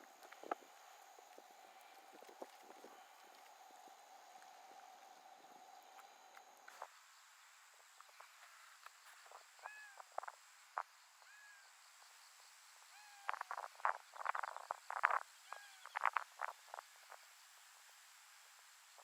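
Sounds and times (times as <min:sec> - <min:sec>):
sharp crackles and clicks: 0:00.0 - 0:06.9.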